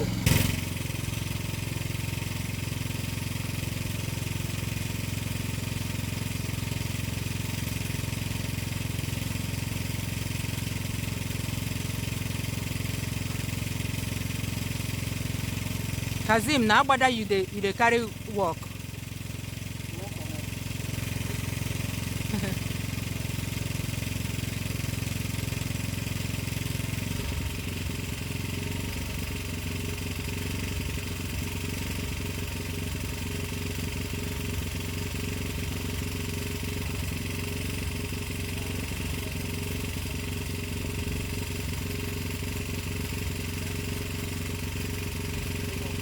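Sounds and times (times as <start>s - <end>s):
generator engine humming: 0.0s - 46.0s.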